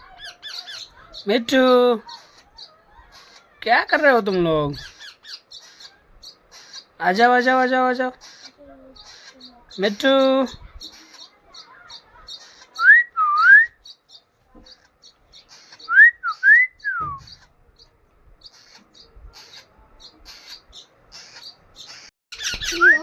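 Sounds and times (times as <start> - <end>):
parrot chirping squeaks: 0.0 - 1.3, 2.0 - 3.6, 4.7 - 7.0, 8.1 - 17.6, 18.4 - 23.0
parrot whistling gliding notes: 15.8 - 17.4.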